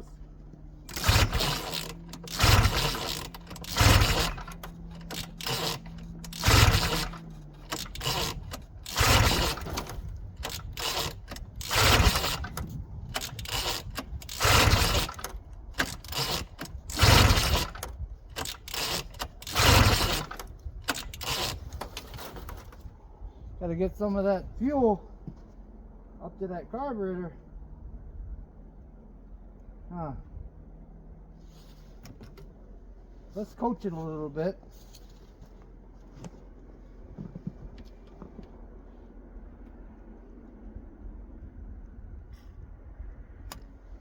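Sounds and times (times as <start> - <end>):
engine recoil pull-start cranking: 0.8 - 22.9.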